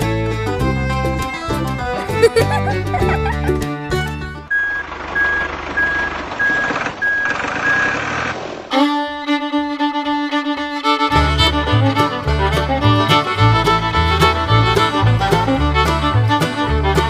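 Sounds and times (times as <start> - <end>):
fiddle music: 0.0 - 4.5, 8.7 - 17.0
vehicle engine running: 0.6 - 8.6
reversing alarm beeping: 4.5 - 8.0.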